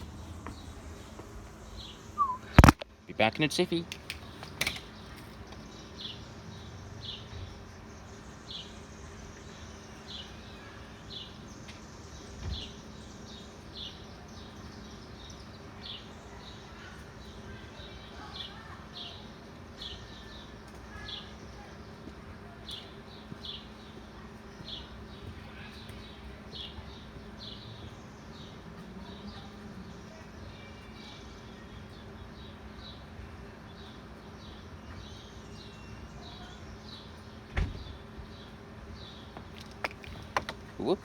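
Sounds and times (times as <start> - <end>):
small bird chirping: 0.0 - 2.8
steady low hum: 0.0 - 14.2.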